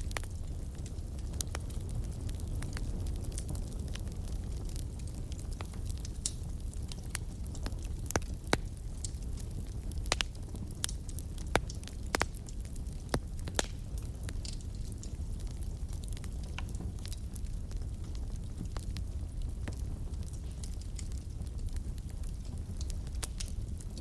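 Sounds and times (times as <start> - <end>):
fire low rumble: 0.0 - 24.0
logs crackling and popping: 0.0 - 24.0.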